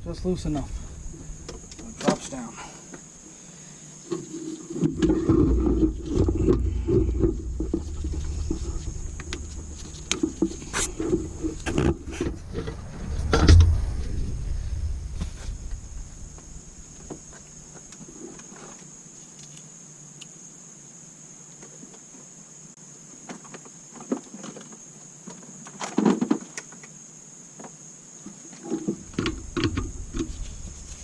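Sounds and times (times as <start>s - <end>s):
faint high whine: 0.0s - 18.0s.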